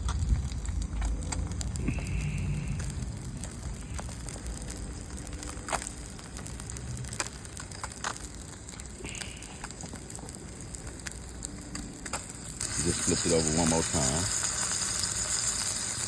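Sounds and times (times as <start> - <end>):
fish sizzling in oil: 0.0 - 16.0
oil popping and crackling: 0.0 - 16.0.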